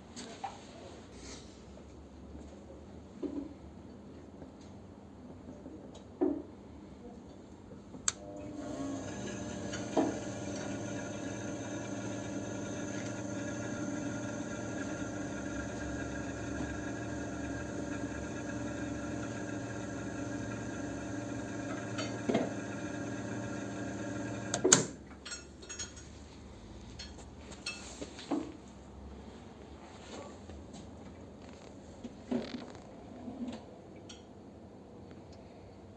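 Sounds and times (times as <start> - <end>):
machine shutting off clunk: 8.1 - 25.0
test stand machine humming: 8.2 - 24.9.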